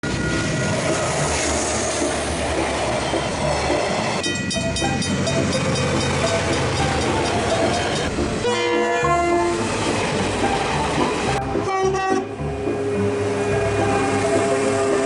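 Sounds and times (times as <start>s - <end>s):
train wheels rumbling: 0.0s - 15.0s.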